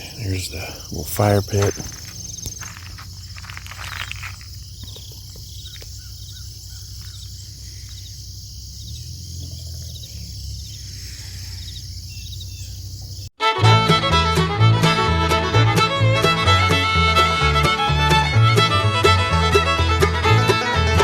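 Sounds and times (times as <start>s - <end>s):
insects chirring: 0.0s - 13.3s
low steady rumble: 1.8s - 13.3s.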